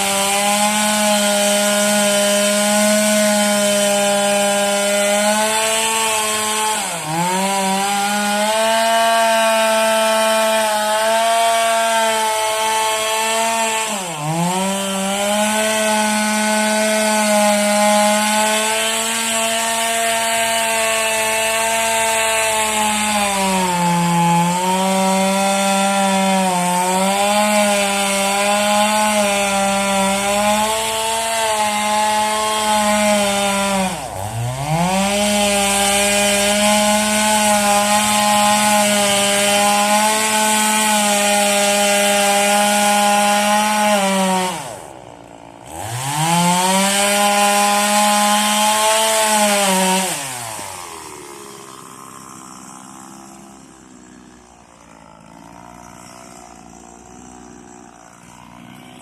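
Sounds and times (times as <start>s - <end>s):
chainsaw cutting wood: 0.0s - 59.0s.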